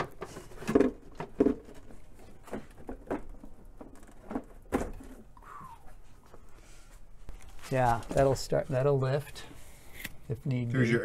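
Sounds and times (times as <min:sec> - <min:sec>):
plastic parts clicking and knocking: 0:00.0 - 0:05.4.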